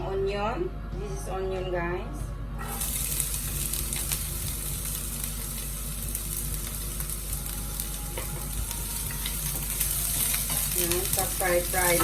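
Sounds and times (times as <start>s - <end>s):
onion sizzling in oil: 2.6s - 12.0s.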